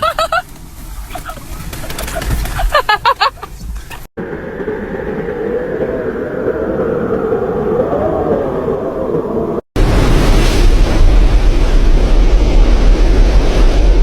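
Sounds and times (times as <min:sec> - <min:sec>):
gusty wind buffeting microphone: 0:03.5 - 0:14.0
wind howling: 0:03.6 - 0:14.0.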